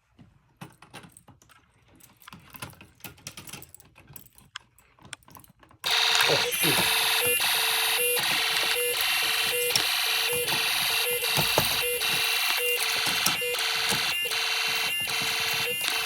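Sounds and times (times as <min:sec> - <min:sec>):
pulsing electronic alarm tone: 0:05.9 - 0:16.0.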